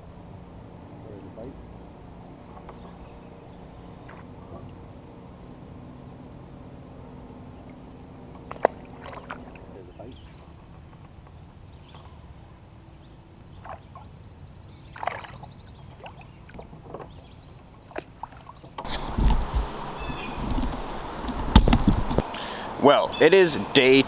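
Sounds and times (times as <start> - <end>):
light water sounds: 7.3 - 12.5, 13.4 - 24.0
knocks on kayak: 18.9 - 22.3
low thumps: 18.9 - 22.7
steady rushing noise: 18.9 - 24.0.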